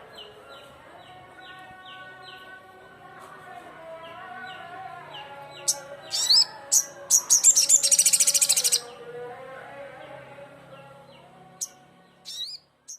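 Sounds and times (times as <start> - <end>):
bird chips and trill: 5.6 - 8.9, 11.6 - 12.9.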